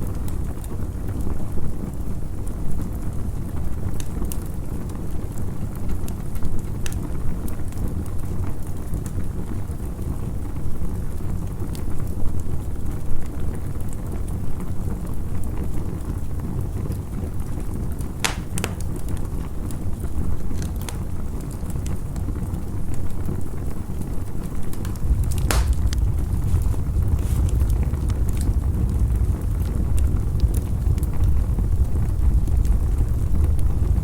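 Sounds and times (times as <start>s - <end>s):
fire low rumble: 0.0s - 34.0s
campfire crackling and popping: 15.4s - 34.0s.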